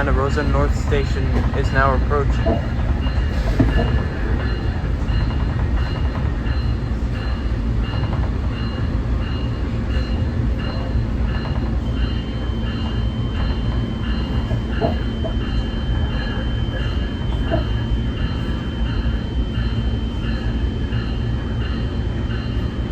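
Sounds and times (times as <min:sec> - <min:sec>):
train engine and wheels rumbling: 0:00.0 - 0:22.9.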